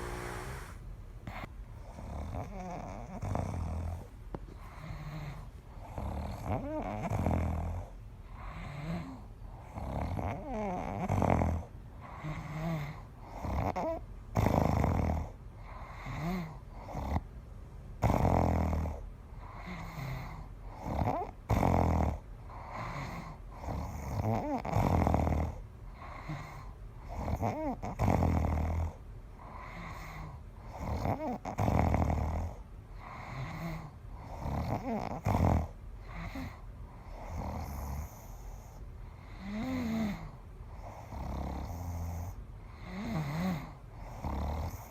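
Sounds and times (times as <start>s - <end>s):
person snoring: 0.0s - 1.4s
quiet breathing: 0.0s - 14.1s, 25.5s - 27.9s, 29.3s - 31.5s, 32.4s - 44.9s.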